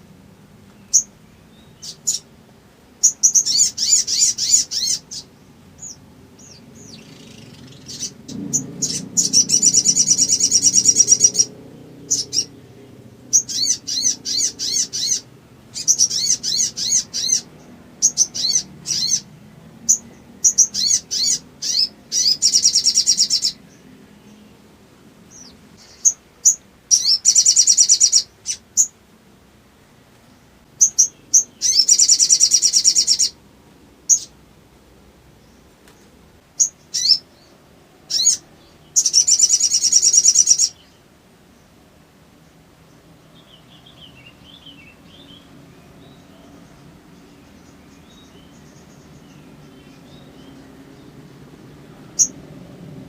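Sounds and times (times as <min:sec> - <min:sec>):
bird chattering trills: 0:03.0 - 0:12.7, 0:13.3 - 0:23.7, 0:25.3 - 0:29.0, 0:30.8 - 0:33.4, 0:36.6 - 0:37.5, 0:38.1 - 0:40.9.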